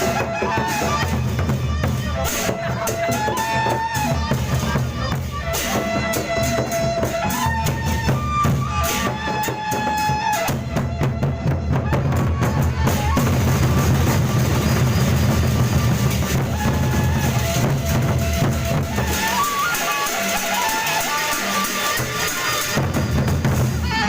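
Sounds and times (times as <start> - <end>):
big drums beating: 0.0 - 24.0
clashing cymbals: 13.2 - 23.8.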